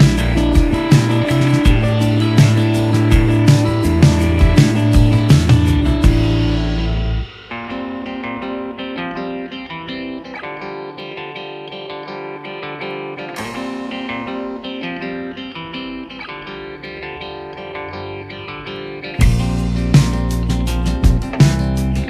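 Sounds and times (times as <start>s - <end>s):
plucked guitar music: 0.0s - 22.0s.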